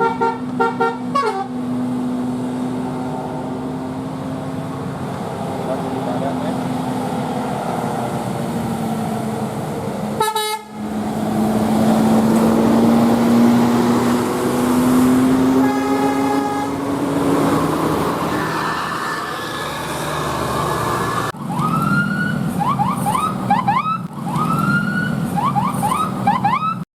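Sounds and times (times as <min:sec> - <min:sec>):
musical air horn notes: 0:00.0 - 0:01.5, 0:10.2 - 0:10.8, 0:15.5 - 0:17.0
horn blast: 0:00.0 - 0:01.6, 0:10.2 - 0:10.8, 0:15.3 - 0:17.1
bus engine running: 0:00.0 - 0:26.8.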